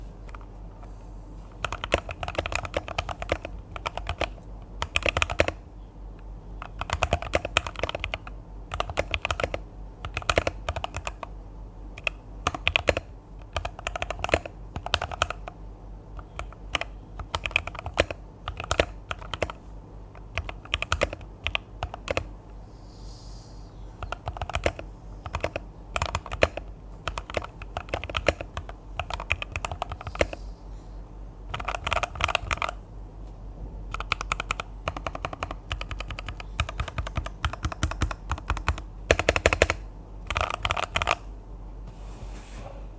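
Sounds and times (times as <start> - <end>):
mechanical keyboard typing: 1.6 - 5.6, 6.6 - 11.3, 12.0 - 15.6, 16.2 - 22.3, 24.0 - 30.4, 31.5 - 32.8, 33.9 - 41.2.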